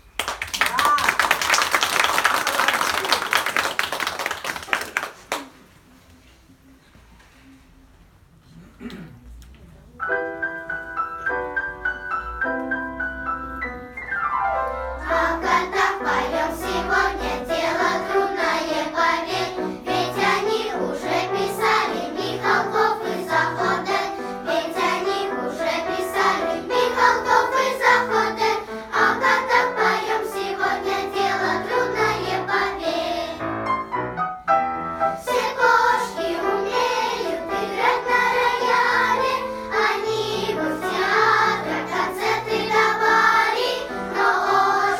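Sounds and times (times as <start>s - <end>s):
children's choir singing: 14.8s - 34.0s, 35.0s - 44.9s.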